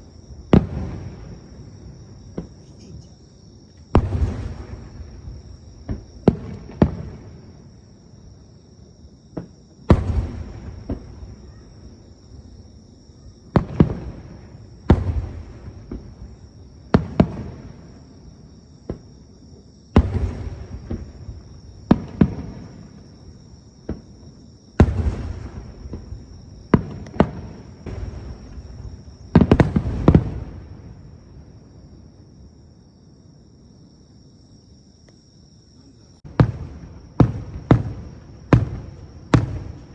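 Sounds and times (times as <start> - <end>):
firework shells booming: 0.0 - 3.2, 3.8 - 7.8, 9.3 - 12.1, 13.5 - 18.0, 19.9 - 23.2, 23.8 - 31.2, 36.2 - 39.9.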